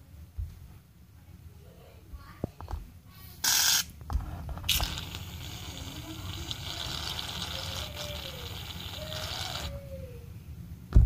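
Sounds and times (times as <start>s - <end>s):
aerosol can spraying hiss: 3.4s - 3.9s, 4.7s - 7.8s.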